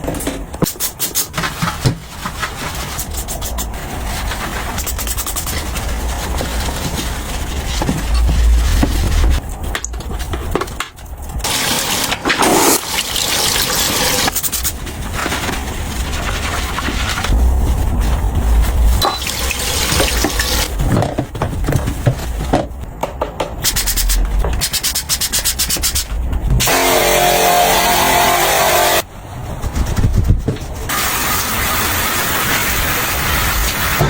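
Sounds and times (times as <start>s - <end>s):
water running and splashing: 11.4s - 15.2s, 19.0s - 20.8s.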